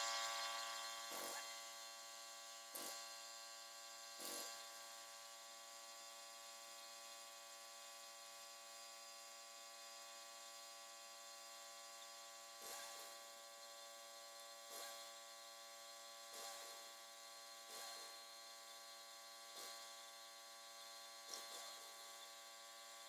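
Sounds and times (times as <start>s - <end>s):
steady machine hum: 0.0s - 3.0s.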